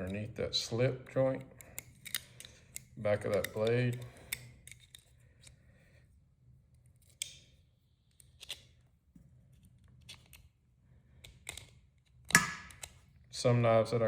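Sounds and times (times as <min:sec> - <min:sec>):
metallic pick clicks and scrapes: 0:01.3 - 0:05.6.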